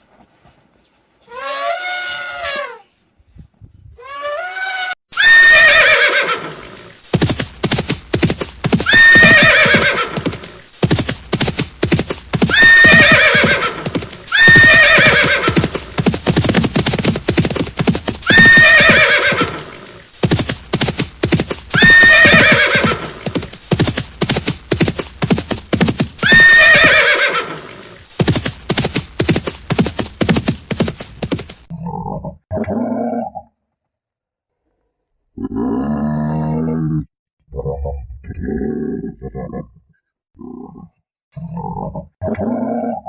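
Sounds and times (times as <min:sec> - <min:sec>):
horse whinnying: 0:04.0 - 0:06.9, 0:08.7 - 0:10.6, 0:12.4 - 0:16.4, 0:18.2 - 0:20.0, 0:21.7 - 0:23.5, 0:26.2 - 0:28.0
hoofbeats clip-clopping: 0:07.1 - 0:27.1, 0:28.1 - 0:31.7.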